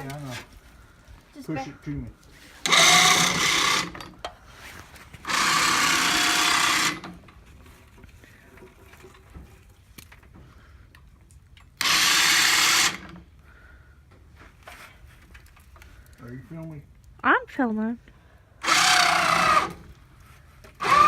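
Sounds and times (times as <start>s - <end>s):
electric winch motor whining: 2.6s - 4.1s, 5.2s - 7.2s, 11.8s - 13.2s, 18.6s - 19.9s, 20.8s - 21.0s.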